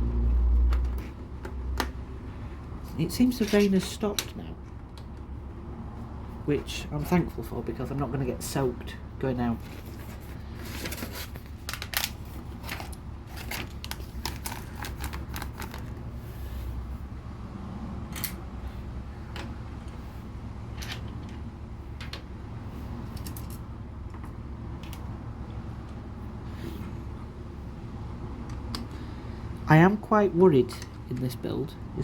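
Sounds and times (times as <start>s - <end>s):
steady low hum: 0.0s - 32.0s
plastic pieces clicking and rattling: 10.7s - 15.9s.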